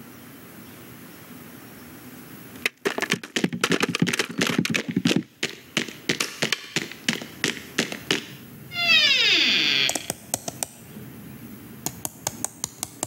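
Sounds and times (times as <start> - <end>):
plastic toy soldiers clattering: 2.7 - 8.3.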